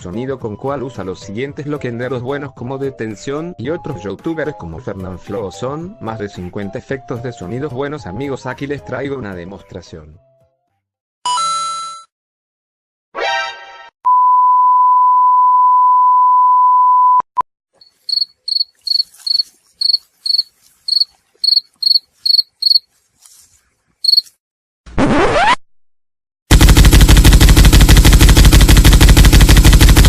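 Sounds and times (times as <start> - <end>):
crickets chirping: 17.8 - 22.9, 24.0 - 24.3.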